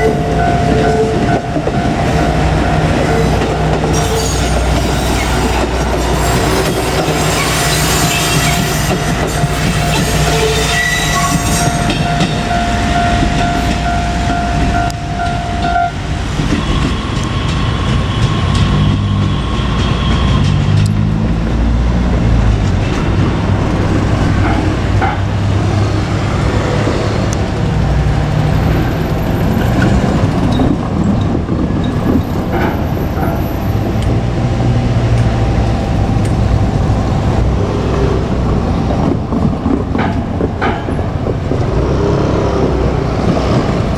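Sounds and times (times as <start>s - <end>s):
trains rumbling past: 0.0s - 43.9s
diesel engine note climbing: 18.2s - 43.9s
wheel clatter: 22.1s - 34.2s.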